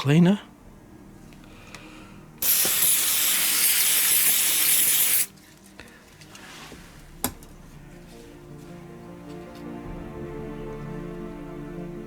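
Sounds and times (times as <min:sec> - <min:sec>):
aerosol can spraying hiss: 0:02.4 - 0:05.3.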